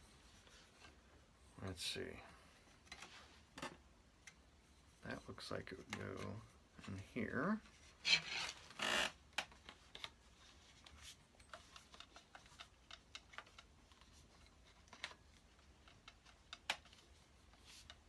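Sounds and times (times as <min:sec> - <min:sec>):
light clicks and taps: 0:05.7 - 0:07.0.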